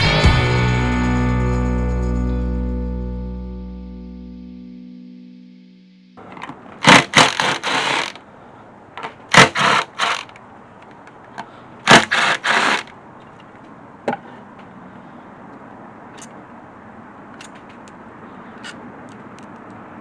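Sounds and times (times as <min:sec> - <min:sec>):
scraping clattering tool noise: 0:06.2 - 0:08.2, 0:09.0 - 0:11.1, 0:11.8 - 0:13.6.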